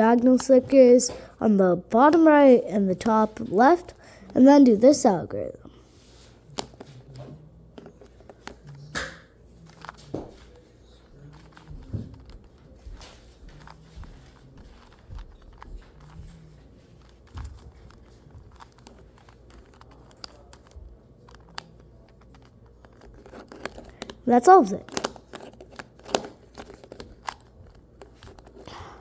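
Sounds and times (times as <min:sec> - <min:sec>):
plastic puzzle cube clicking: 0:17.0 - 0:24.2, 0:24.8 - 0:28.7.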